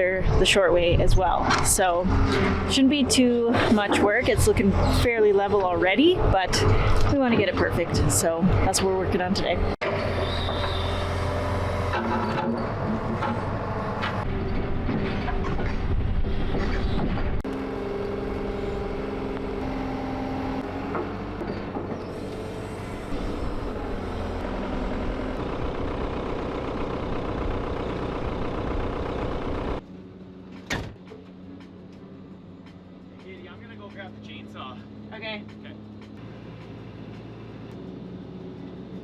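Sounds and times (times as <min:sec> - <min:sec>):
excavator diesel engine running: 0:00.0 - 0:39.0.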